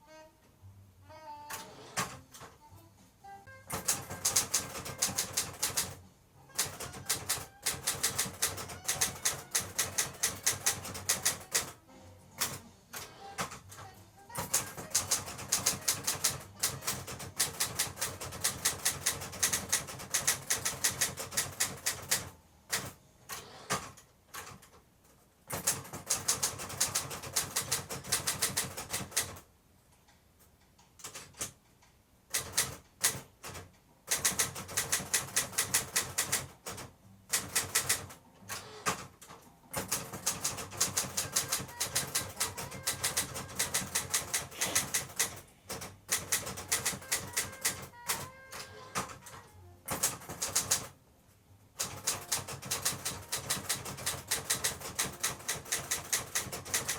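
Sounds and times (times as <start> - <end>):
typewriter key strikes: 3.7 - 11.8, 13.4 - 23.0, 25.5 - 29.4, 32.3 - 38.1, 39.8 - 50.9, 51.8 - 56.9.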